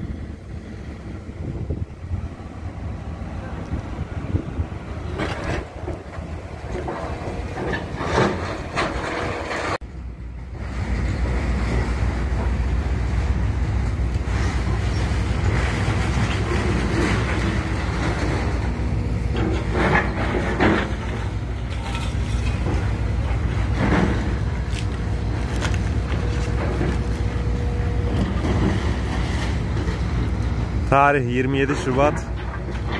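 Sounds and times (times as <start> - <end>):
demolition machinery engine rumble: 0.0 - 32.9
knocks and clatter: 5.1 - 9.8, 14.3 - 27.3, 31.7 - 32.9.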